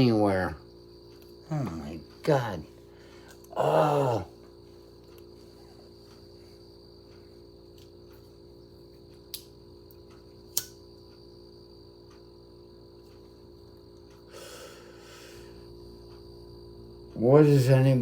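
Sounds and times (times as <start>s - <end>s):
faint regular ticking: 0.0s - 14.3s, 15.4s - 18.0s
steady hum: 0.0s - 18.0s
sharp clicks: 9.3s - 11.1s.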